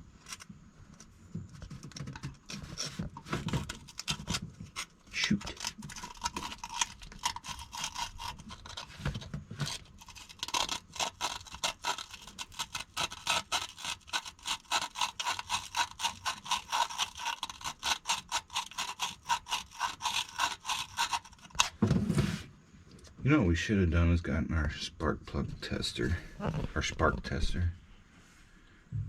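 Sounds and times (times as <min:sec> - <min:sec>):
sandpaper rubbing on metal contacts: 0:02.6 - 0:21.7.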